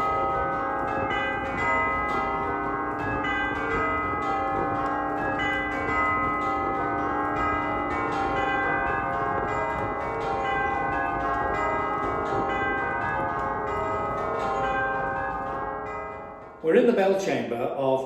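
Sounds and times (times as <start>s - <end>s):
tubular bells ringing: 0.0s - 17.8s.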